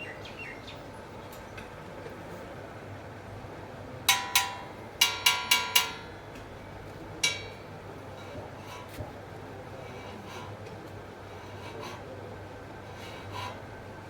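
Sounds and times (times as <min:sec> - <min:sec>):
metal striking hollow pipe: 0:04.1 - 0:06.2, 0:07.2 - 0:07.7.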